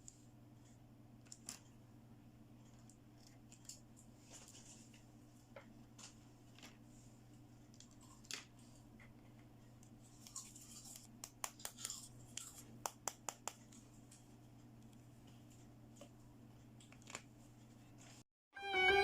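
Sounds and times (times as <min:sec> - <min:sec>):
rustling: 0:02.6 - 0:07.2.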